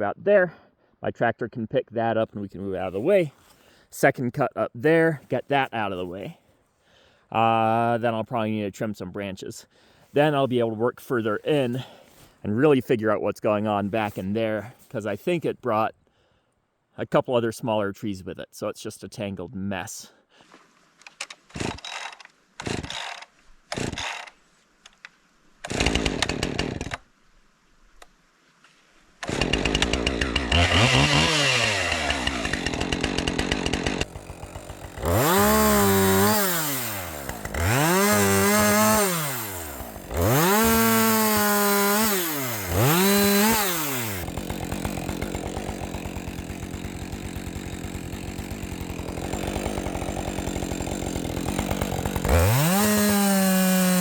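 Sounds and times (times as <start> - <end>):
chainsaw engine running: 25.7 - 27.0, 29.2 - 54.0.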